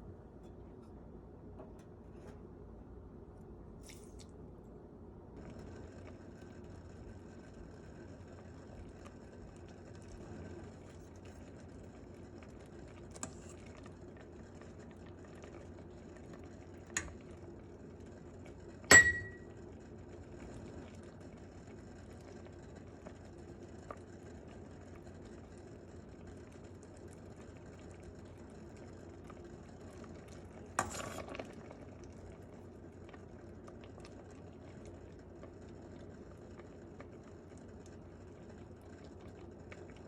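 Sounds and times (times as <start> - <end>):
low steady hum: 0.0 - 40.0
utensils clinking against cookware: 18.9 - 19.4.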